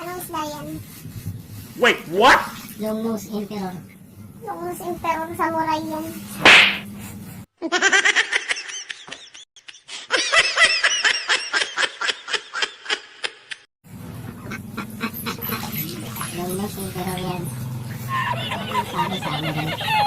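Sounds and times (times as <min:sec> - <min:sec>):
short swish: 0:06.4 - 0:07.2
rapid pulsing laughter: 0:14.2 - 0:15.8, 0:17.9 - 0:20.0.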